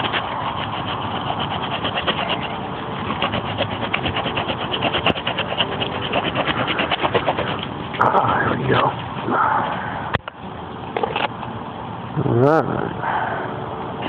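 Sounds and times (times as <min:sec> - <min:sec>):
knife sawing through wood: 0:00.0 - 0:09.3.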